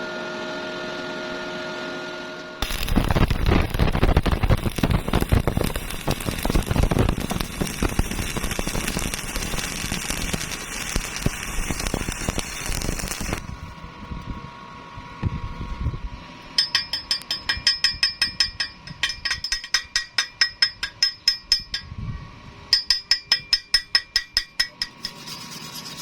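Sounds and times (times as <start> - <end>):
arc welding crackling: 2.6 - 14.2.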